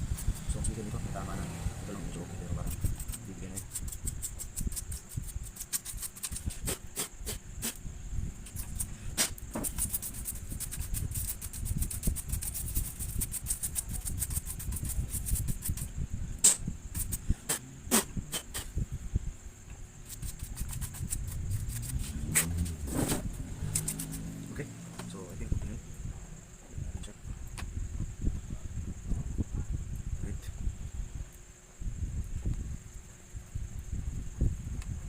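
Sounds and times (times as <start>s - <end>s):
scratchy rubbing: 0.0s - 0.9s, 2.4s - 7.8s, 8.5s - 15.9s, 16.9s - 18.7s, 20.0s - 24.4s.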